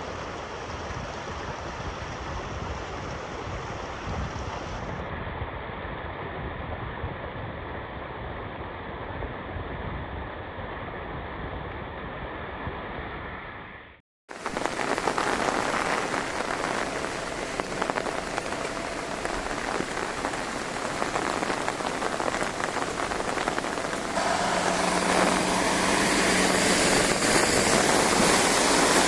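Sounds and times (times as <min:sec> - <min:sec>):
heavy rain pouring: 0:00.0 - 0:04.7, 0:14.3 - 0:29.0.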